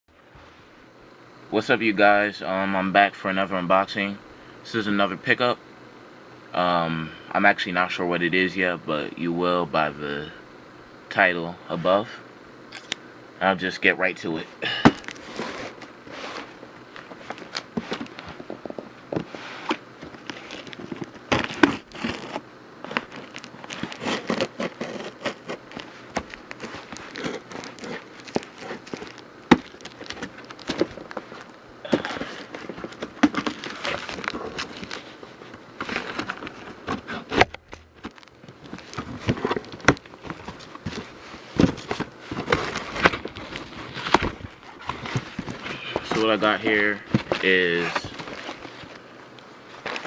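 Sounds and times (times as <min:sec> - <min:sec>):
packaging crinkling and rustling: 0:14.8 - 0:50.0.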